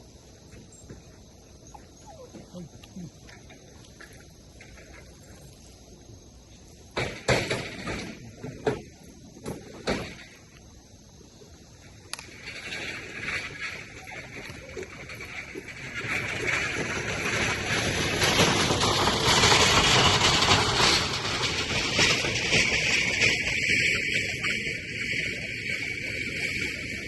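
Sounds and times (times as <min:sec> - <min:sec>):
loud knocks and clatters: 0:06.9 - 0:10.4, 0:15.3 - 0:24.4
rustling scraping noise: 0:12.3 - 0:25.4.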